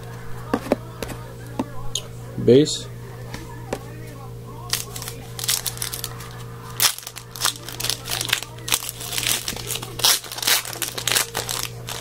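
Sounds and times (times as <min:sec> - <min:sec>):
cards and packaging rustling: 0:00.5 - 0:01.7, 0:04.6 - 0:12.0.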